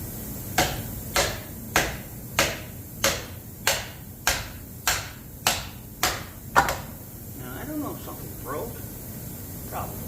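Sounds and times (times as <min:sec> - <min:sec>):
hammer striking metal: 0:00.6 - 0:06.9.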